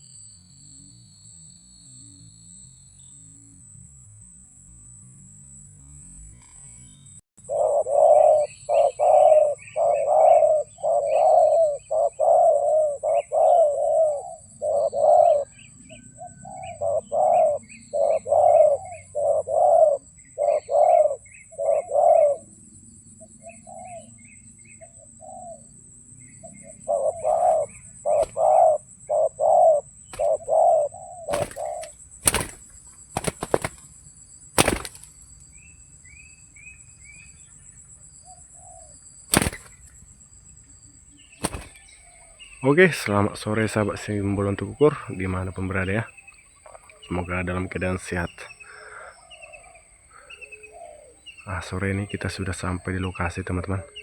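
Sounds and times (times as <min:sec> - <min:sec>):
dove cooing: 0:07.4 - 0:22.5, 0:26.4 - 0:33.9, 0:34.6 - 0:35.1, 0:38.3 - 0:39.9, 0:41.4 - 0:42.5, 0:47.6 - 0:51.3
sharp cracks: 0:28.2 - 0:28.5, 0:30.1 - 0:30.5, 0:31.3 - 0:35.2, 0:39.3 - 0:40.0, 0:41.4 - 0:42.0.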